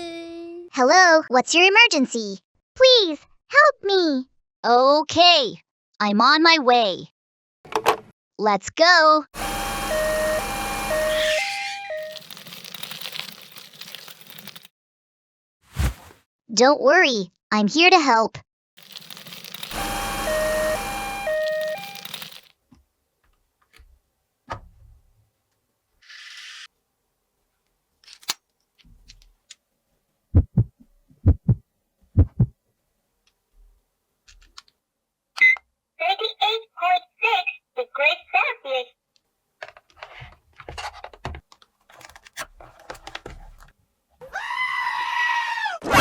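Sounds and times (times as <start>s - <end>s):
toy siren hi-lo: 9.4s - 13.1s, 18.9s - 22.5s
plastic toy parts clicking: 12.0s - 14.7s, 18.8s - 20.6s, 21.2s - 22.5s, 28.0s - 29.6s.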